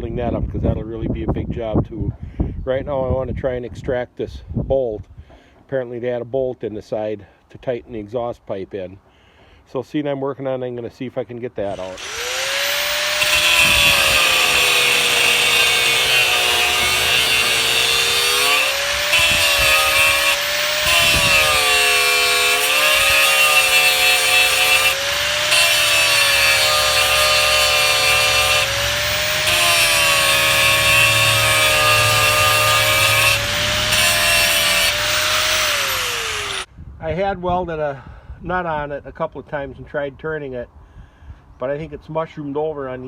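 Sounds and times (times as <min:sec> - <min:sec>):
power tool grinding metal: 0:11.7 - 0:36.7.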